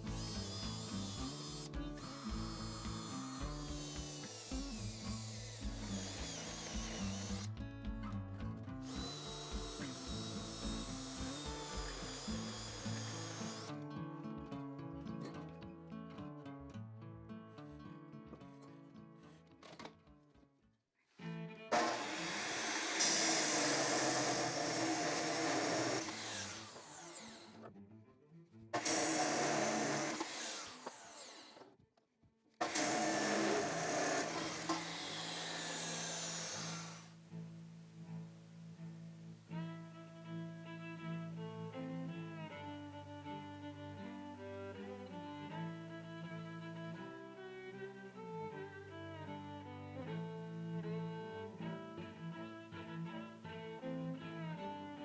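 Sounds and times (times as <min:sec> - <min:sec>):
power tool whining: 0:00.0 - 0:07.6, 0:08.8 - 0:13.8, 0:21.7 - 0:27.7, 0:28.8 - 0:31.8, 0:32.6 - 0:37.2.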